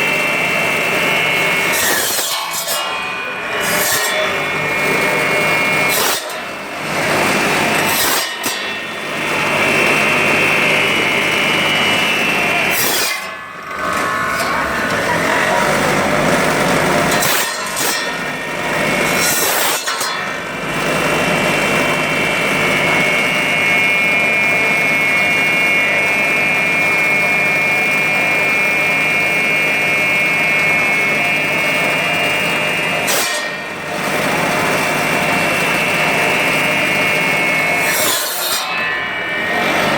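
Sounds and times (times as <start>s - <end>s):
bone saw motor whine: 0.0s - 39.9s
saw blade rasping through bone: 1.6s - 8.8s, 16.8s - 18.2s.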